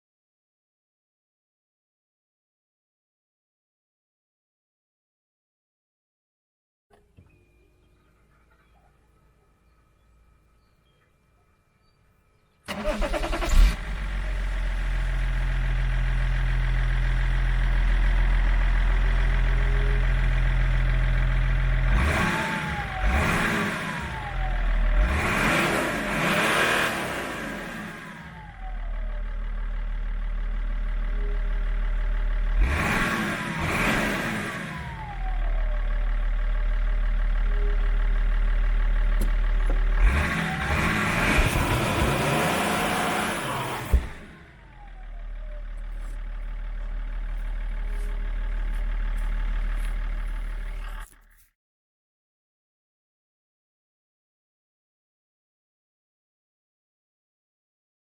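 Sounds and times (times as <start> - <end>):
diesel engine idling: 12.7 - 26.6, 27.2 - 51.3
diesel engine revving: 12.7 - 51.2.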